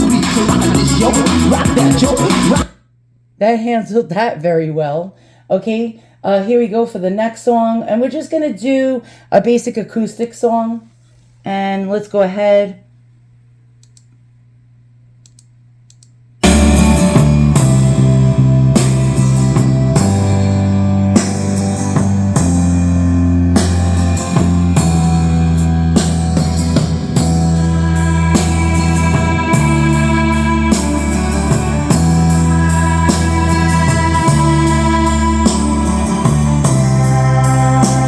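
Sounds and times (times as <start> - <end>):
song with guitar and drums: 0.0 - 2.7, 16.4 - 38.0.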